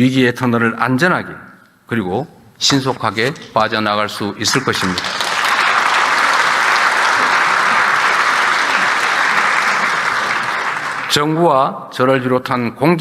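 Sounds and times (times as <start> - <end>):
large audience applauding: 3.2 - 11.4.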